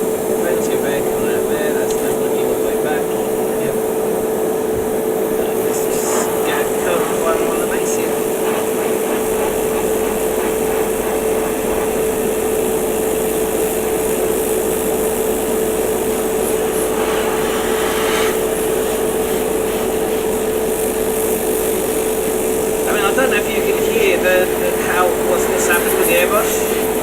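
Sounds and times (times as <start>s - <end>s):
airbrush spraying hiss: 0.0s - 27.0s
compressor humming: 0.0s - 27.0s.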